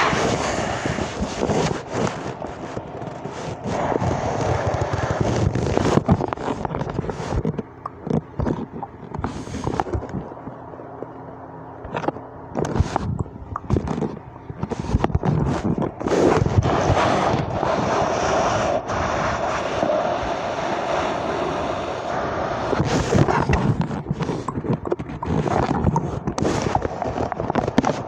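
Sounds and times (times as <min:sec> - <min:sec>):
person making clicking noises: 0:04.4 - 0:10.3, 0:11.9 - 0:15.7.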